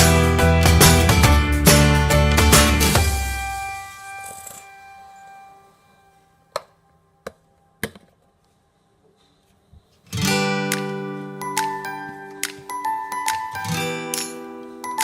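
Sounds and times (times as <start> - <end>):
strummed acoustic guitar chords: 0.0 - 4.0, 10.1 - 11.7.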